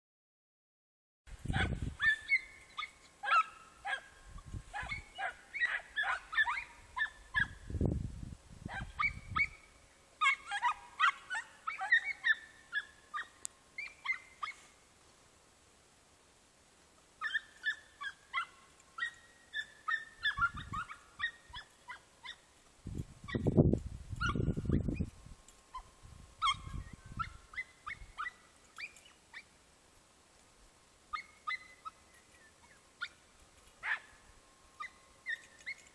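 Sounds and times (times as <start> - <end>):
hounds yelping: 1.5 - 7.6, 8.7 - 14.7, 17.2 - 22.5, 24.2 - 24.9, 25.7 - 29.5, 31.1 - 33.2, 33.8 - 34.2, 34.8 - 35.9.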